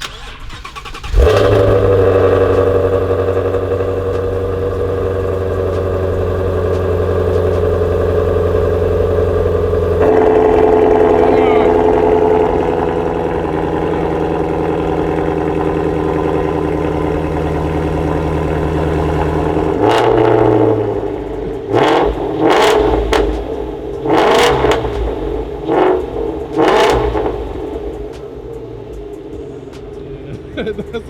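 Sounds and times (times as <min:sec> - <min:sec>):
car engine idling: 0:00.0 - 0:31.0
engine revving in throttle blips: 0:00.0 - 0:31.0
man speaking: 0:11.1 - 0:12.2.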